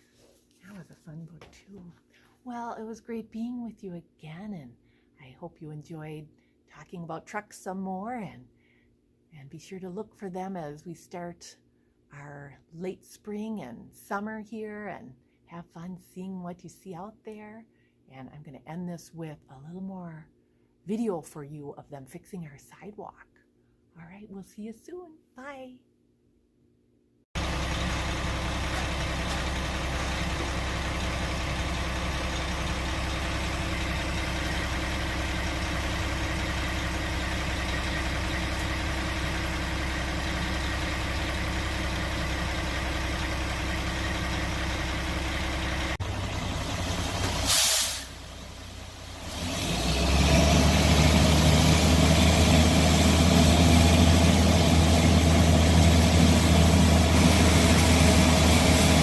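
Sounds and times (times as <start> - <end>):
diesel engine idling: 27.4 - 59.0
short sharp hiss: 47.4 - 48.2.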